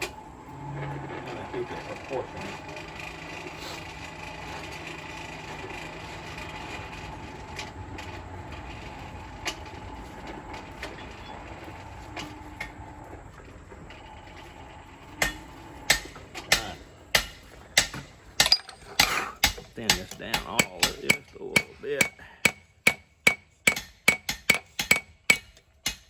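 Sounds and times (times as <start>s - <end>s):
forge running: 0.0s - 26.0s
hammer blows on hot steel: 15.2s - 26.0s.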